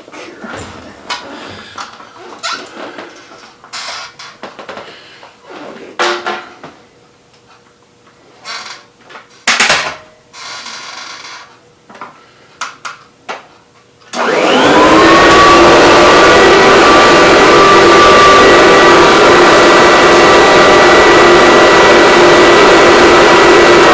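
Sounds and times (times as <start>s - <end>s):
vacuum cleaner motor whine: 14.1s - 23.9s.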